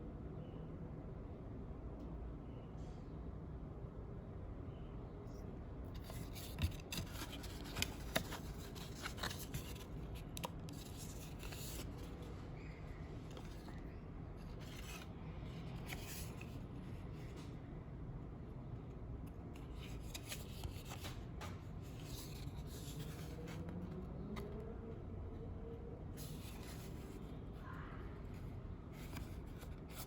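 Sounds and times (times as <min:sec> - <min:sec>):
packaging rustling and scraping: 0:06.0 - 0:12.2.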